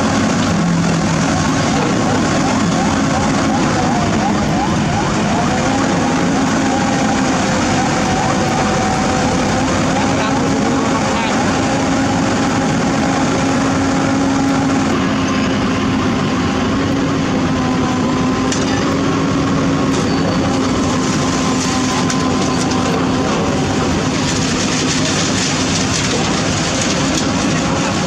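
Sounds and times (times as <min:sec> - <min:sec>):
diesel engine running: 0:00.0 - 0:28.0.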